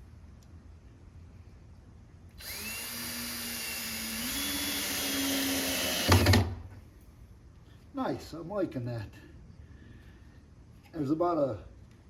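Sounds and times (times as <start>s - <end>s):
screw gun motor whining: 2.4s - 6.5s.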